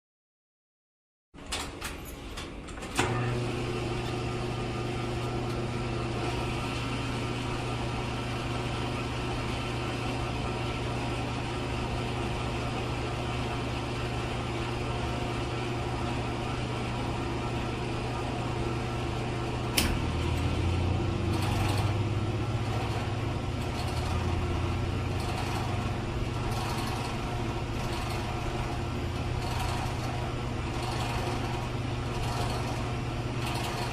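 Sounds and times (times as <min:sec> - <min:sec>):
low mechanical hum: 0:01.4 - 0:33.9
deeper hum: 0:15.1 - 0:33.4.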